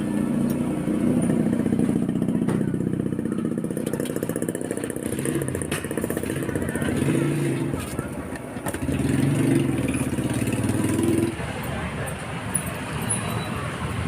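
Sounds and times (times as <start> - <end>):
small motorcycle engine running: 0.0 - 8.0
street noise: 0.0 - 14.0.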